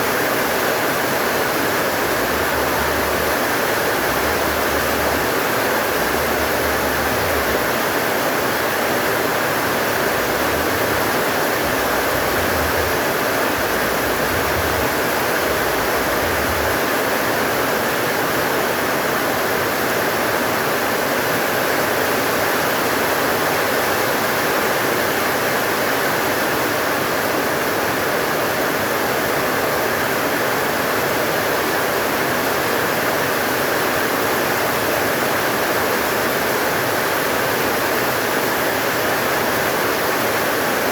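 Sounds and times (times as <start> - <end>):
heavy rain pouring: 0.0 - 40.9
low rumbles: 13.6 - 16.8.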